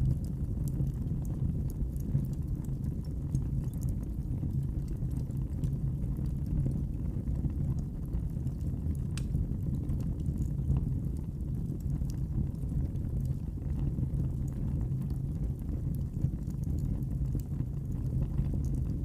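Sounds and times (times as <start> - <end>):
fire crackles and pops: 0.0 - 19.0
wood fire rumbling: 0.0 - 19.0.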